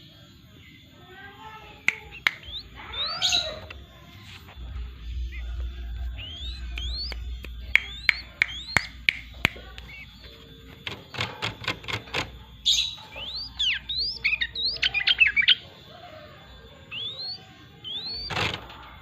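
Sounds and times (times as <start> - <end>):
bird singing whistled notes: 1.7 - 3.8, 4.9 - 11.3, 12.6 - 18.4
sharp clicks: 1.9 - 2.7, 6.2 - 12.4, 17.9 - 18.9
fast bird chattering: 6.2 - 15.7, 16.8 - 18.7.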